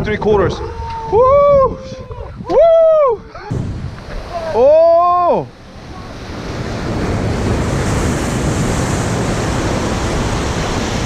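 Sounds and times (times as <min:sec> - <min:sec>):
wind buffeting microphone: 0:00.0 - 0:11.0
surf washing against rocks: 0:03.4 - 0:11.0.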